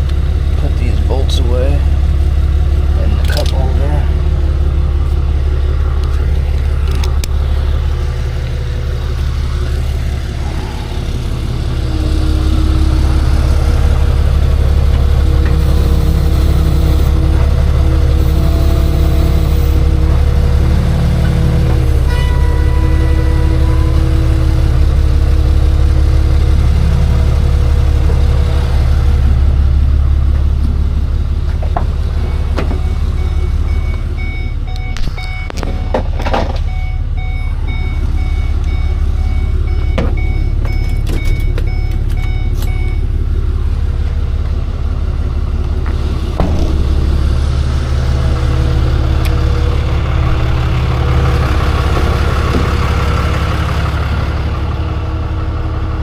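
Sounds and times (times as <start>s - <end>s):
truck engine idling: 0.0s - 56.0s
sharp knocks: 46.2s - 49.2s.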